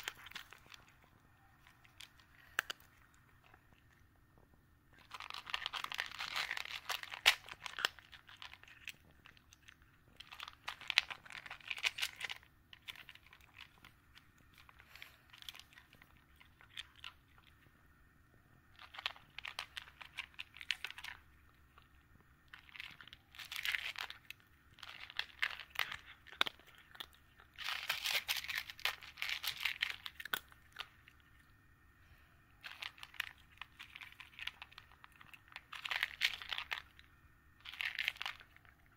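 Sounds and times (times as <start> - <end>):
cat chewing food: 0.0 - 38.9.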